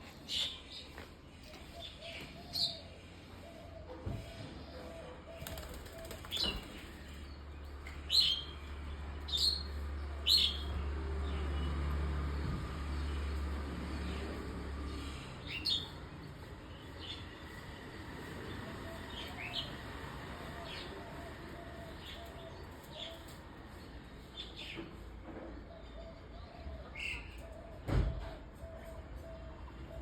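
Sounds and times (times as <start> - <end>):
pigeons cooing: 1.4 - 7.3, 18.4 - 23.5, 25.5 - 30.0.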